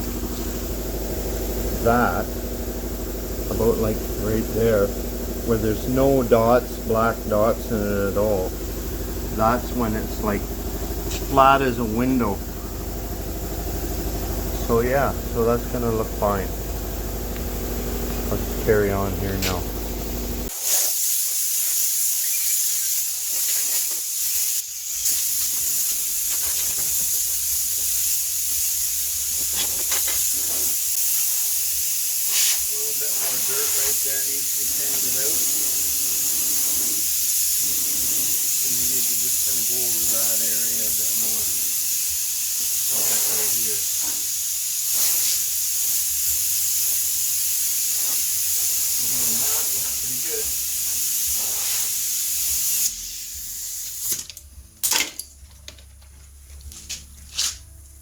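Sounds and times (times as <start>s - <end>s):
sandpaper rubbing wet paint: 25.1s - 41.6s, 42.7s - 44.3s, 47.7s - 52.0s.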